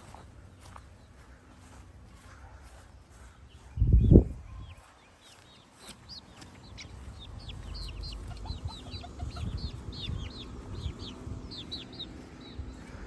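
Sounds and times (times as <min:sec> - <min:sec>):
young chickens peeping: 0:00.0 - 0:13.0.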